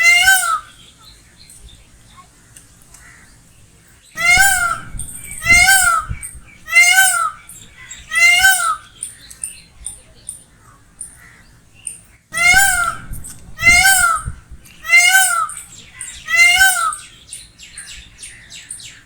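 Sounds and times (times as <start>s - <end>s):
peacock calling: 0.0s - 0.8s, 4.2s - 11.5s, 12.4s - 19.0s.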